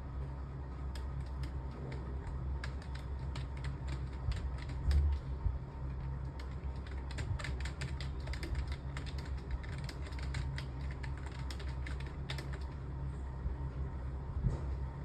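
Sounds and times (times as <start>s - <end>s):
steady low hum: 0.0s - 15.0s
fast typing on keyboard: 0.9s - 5.3s, 5.9s - 12.8s.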